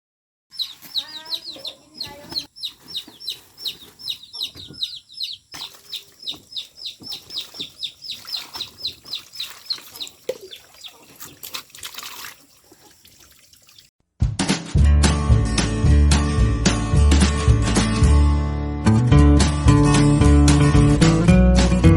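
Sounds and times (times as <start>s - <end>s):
chick peeping: 0.5s - 11.4s.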